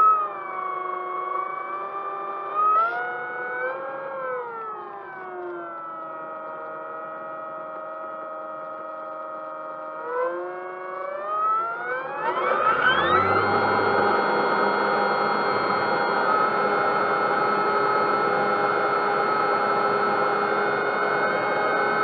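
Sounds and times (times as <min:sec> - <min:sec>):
motor whine: 0:00.0 - 0:22.0.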